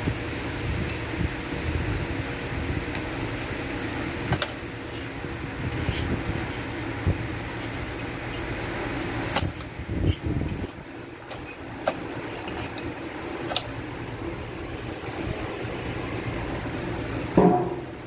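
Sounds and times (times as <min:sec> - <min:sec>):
steady fan hum: 0:00.0 - 0:18.0
metal tools clinking: 0:11.3 - 0:12.8.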